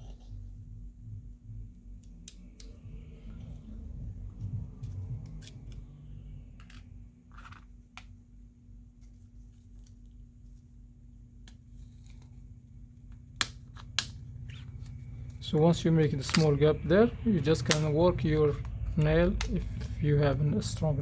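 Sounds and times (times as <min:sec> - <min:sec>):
steady low hum: 0:00.0 - 0:21.0
plastic clips clicking and snapping: 0:16.2 - 0:16.6, 0:17.6 - 0:18.0.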